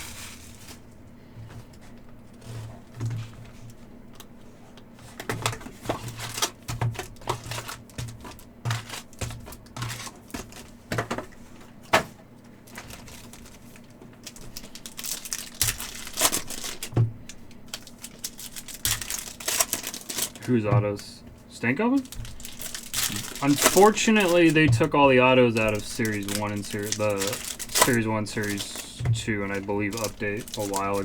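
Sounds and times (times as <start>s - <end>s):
foil wrapper crinkling: 0.0s - 1.0s, 1.6s - 11.7s, 12.4s - 31.0s
cards clicking and tapping: 22.0s - 31.0s.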